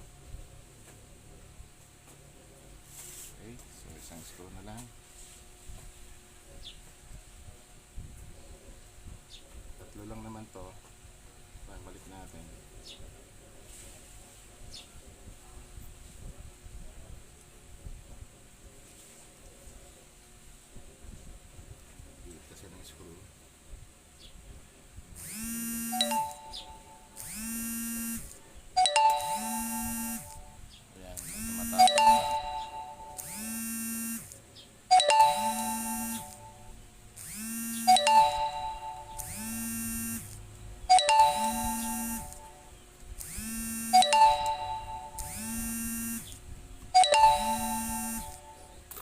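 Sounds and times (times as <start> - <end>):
mobile phone ringtone: 25.4 - 28.2, 28.8 - 30.6, 31.3 - 34.3, 34.9 - 36.8, 37.4 - 40.3, 40.9 - 42.7, 43.4 - 46.3, 47.0 - 48.8
sharp chime: 26.0 - 27.2, 28.8 - 30.6, 31.5 - 33.5, 34.9 - 36.7, 37.8 - 39.5, 40.9 - 42.7, 44.0 - 45.6, 47.0 - 48.8.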